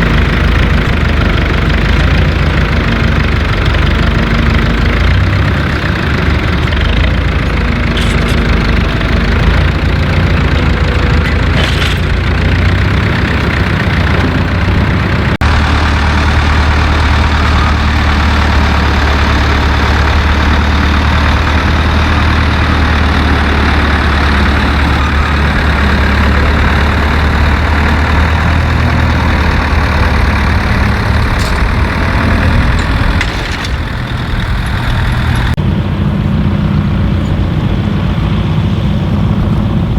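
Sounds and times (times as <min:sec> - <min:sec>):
engine idling: 0:00.0 - 0:39.9.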